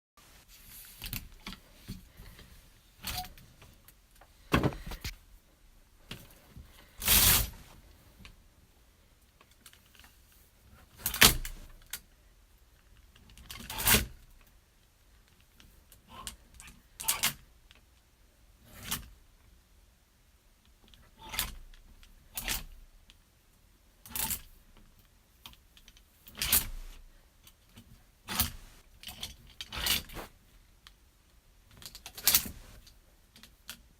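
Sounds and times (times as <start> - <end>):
hangers scraping along metal rail: 7.0 - 7.6, 29.6 - 30.3.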